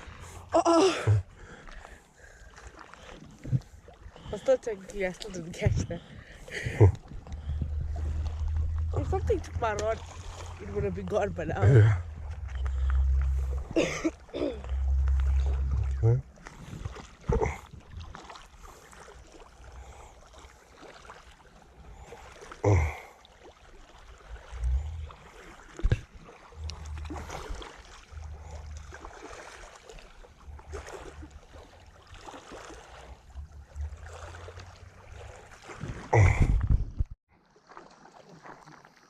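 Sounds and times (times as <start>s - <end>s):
wind rumbling on microphone: 5.5s - 18.2s, 24.3s - 32.0s, 32.9s - 37.2s.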